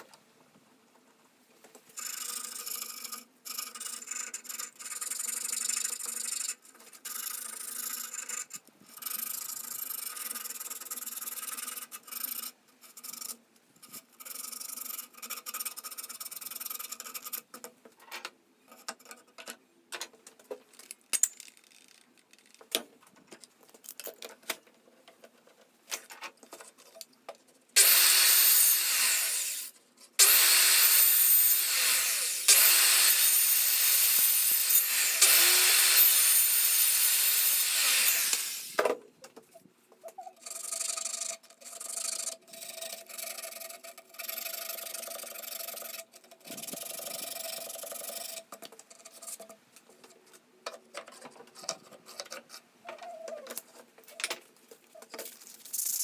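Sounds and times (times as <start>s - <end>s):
loud rasping strokes on wood: 27.8s - 38.8s.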